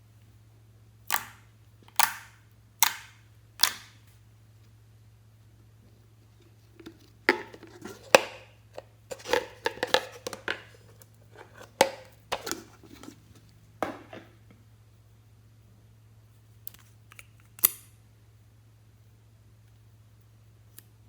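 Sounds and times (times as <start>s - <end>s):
slime clicking and popping: 1.1s - 1.4s, 2.0s - 3.9s.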